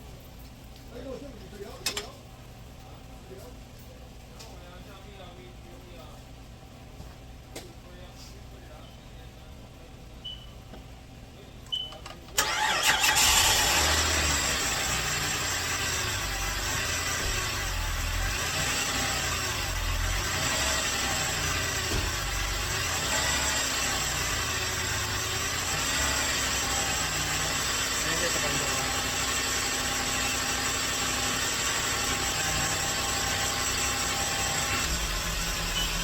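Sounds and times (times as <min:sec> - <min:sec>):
car engine starting and idling: 0:12.3 - 0:36.0.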